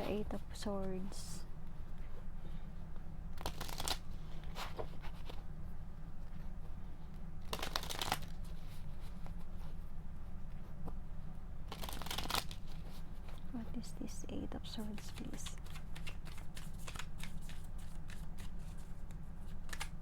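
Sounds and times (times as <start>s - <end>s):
steady low hum: 0.0s - 20.0s
cards being shuffled: 3.4s - 5.4s, 7.4s - 9.5s, 11.7s - 13.5s, 14.7s - 20.0s.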